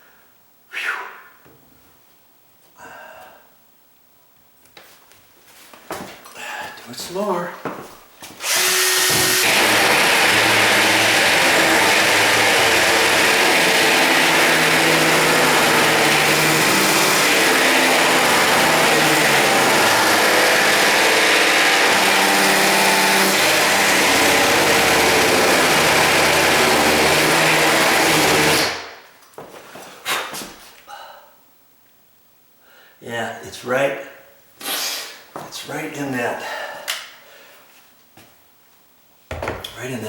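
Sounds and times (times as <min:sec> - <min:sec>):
power drill boring wood: 0:08.4 - 0:28.9.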